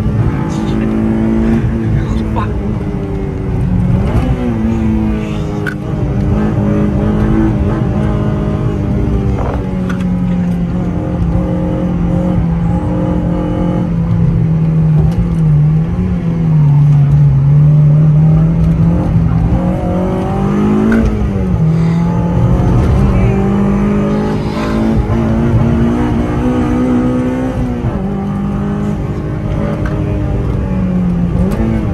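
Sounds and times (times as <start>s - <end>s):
car engine revving hard: 0.0s - 31.9s
road noise: 0.0s - 31.9s.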